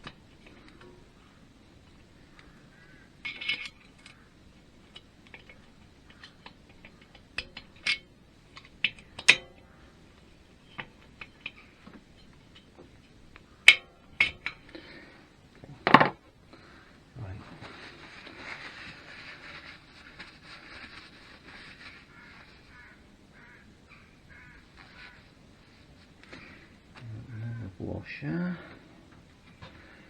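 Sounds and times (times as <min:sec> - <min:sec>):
metal parts and tools clinking: 0:03.2 - 0:04.2, 0:04.8 - 0:09.7.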